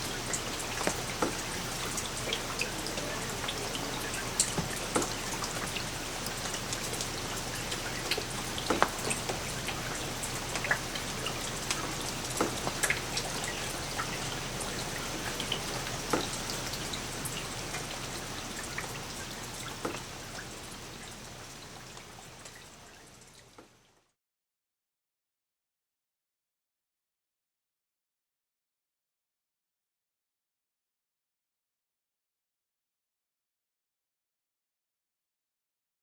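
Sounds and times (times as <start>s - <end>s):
light rain falling: 0.0s - 24.2s
raindrops ticking close by: 0.0s - 24.2s.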